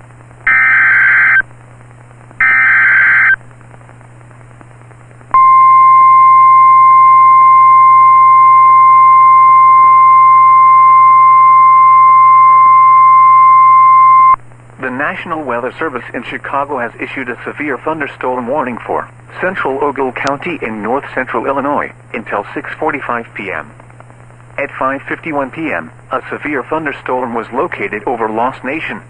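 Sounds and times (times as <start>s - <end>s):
faint low hum: 0.0s - 29.0s
short data bursts: 0.5s - 1.4s, 2.4s - 3.4s
steady alarm tone: 0.5s - 1.4s, 2.4s - 3.4s.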